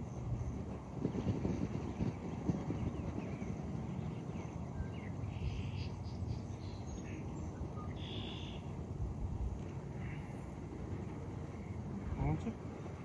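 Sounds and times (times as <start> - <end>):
wind rumble on microphone: 0.0 - 5.6, 8.9 - 9.7.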